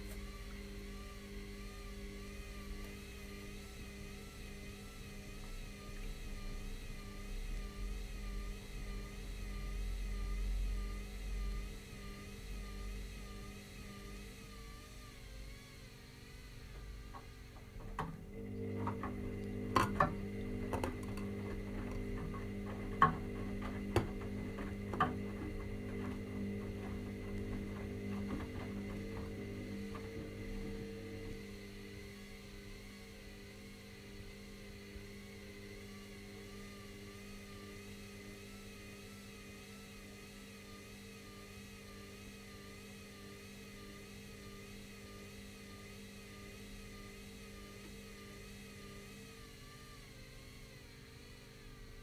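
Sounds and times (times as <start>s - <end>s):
steady hum: 0.0s - 39.0s
washing machine rumble and whine: 0.0s - 52.0s.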